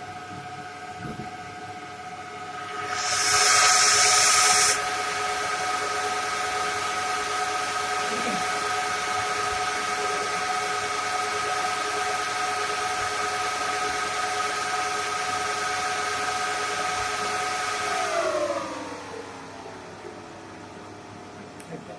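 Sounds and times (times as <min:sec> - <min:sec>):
cooling fans whining: 0:00.0 - 0:21.9
loud rush of air: 0:02.1 - 0:08.0.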